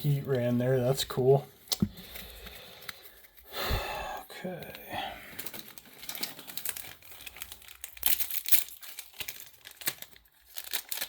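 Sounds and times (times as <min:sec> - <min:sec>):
foil wrapper crinkling: 0:05.3 - 0:11.0.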